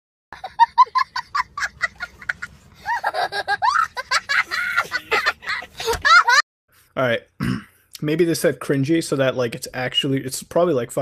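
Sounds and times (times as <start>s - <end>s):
man laughing: 0.4s - 6.4s.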